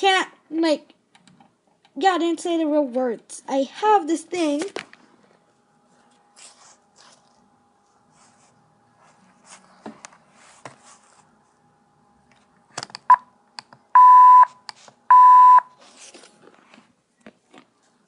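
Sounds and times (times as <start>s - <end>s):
electronic censor bleeps: 14.0s - 14.5s, 15.1s - 15.7s.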